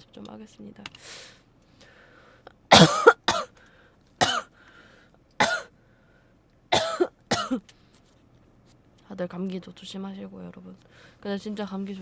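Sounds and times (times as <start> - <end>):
person coughing: 2.7 - 3.5, 4.2 - 4.5, 5.4 - 5.7, 6.8 - 7.6.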